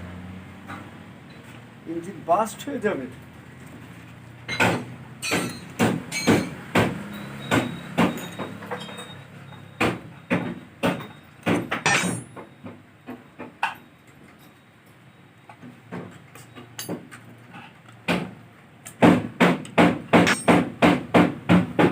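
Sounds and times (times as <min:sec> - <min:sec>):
engine parts knocking and clattering: 0:04.5 - 0:13.9, 0:18.0 - 0:21.9.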